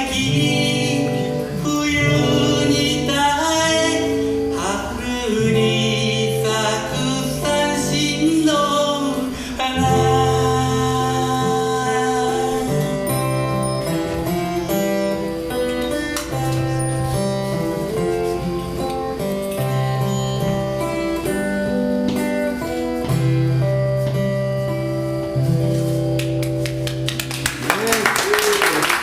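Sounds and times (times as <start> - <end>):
person singing: 0.0 - 14.7
plucked string accompaniment: 0.0 - 27.2.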